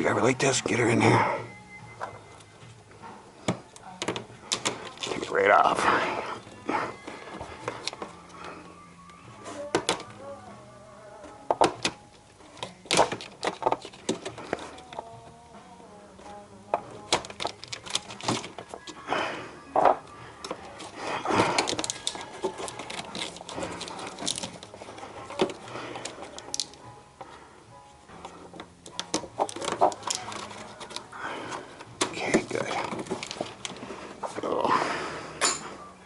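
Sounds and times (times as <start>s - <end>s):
faint music: 0.0s - 36.0s
screwdriver prying at plastic clips: 9.7s - 10.1s, 11.5s - 12.0s, 12.6s - 15.1s, 16.8s - 18.9s, 21.4s - 24.7s, 25.3s - 26.8s, 28.6s - 31.0s.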